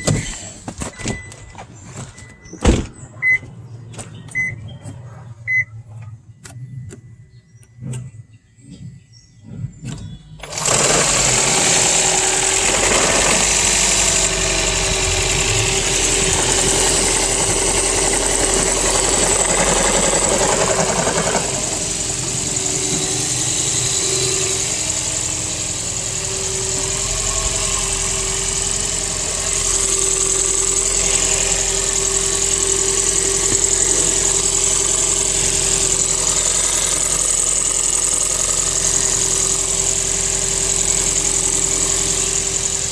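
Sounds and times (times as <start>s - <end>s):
car engine idling: 10.4s - 42.9s.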